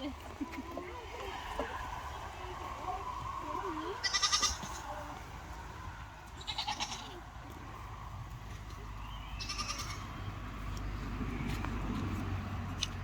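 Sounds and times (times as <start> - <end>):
goats bleating: 4.0 - 4.8, 6.4 - 7.3, 9.3 - 10.1.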